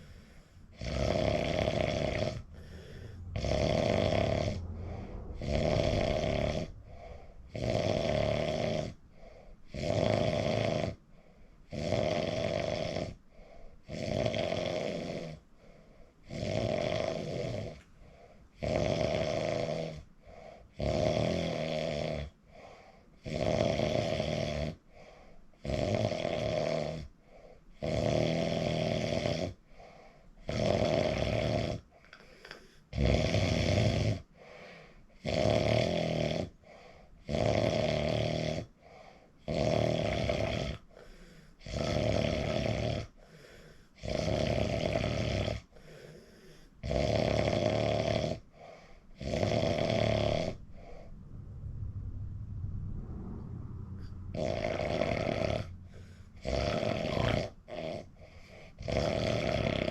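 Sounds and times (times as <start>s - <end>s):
soft breathing: 0.0s - 0.8s, 2.4s - 3.4s, 4.3s - 7.7s, 8.9s - 9.7s, 13.2s - 13.8s, 15.5s - 16.2s, 17.8s - 18.6s, 20.1s - 20.7s, 22.4s - 23.2s, 24.8s - 25.6s, 27.2s - 27.7s, 29.6s - 30.4s, 31.9s - 32.9s, 34.3s - 35.1s, 36.6s - 37.2s, 38.7s - 39.4s, 40.8s - 41.6s, 43.1s - 44.0s, 45.6s - 46.8s, 48.4s - 49.2s, 50.5s - 52.0s, 55.6s - 56.5s, 58.0s - 58.8s
man snoring heavily: 0.0s - 11.0s, 11.7s - 15.4s, 16.2s - 31.9s, 32.5s - 51.1s, 54.3s - 59.9s.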